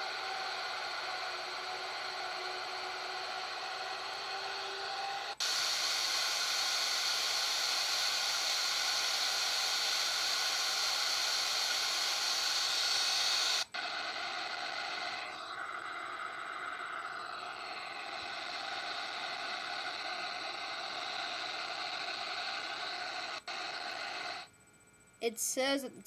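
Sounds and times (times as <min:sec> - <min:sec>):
white noise hiss: 0:00.0 - 0:26.0.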